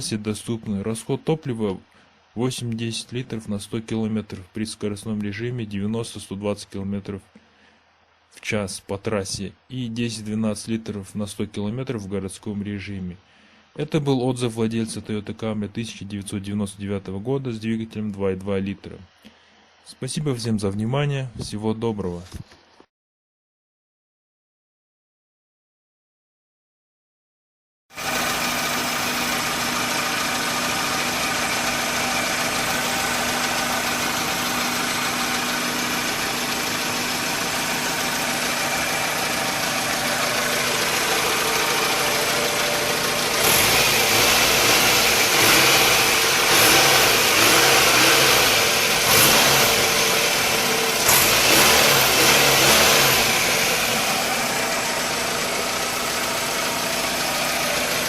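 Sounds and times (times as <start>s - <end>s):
car engine idling: 28.0s - 58.0s.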